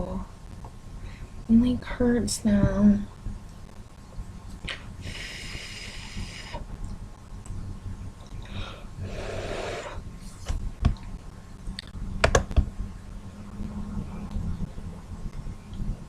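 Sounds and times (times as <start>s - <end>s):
sharp clicks and taps: 11.8s - 12.7s.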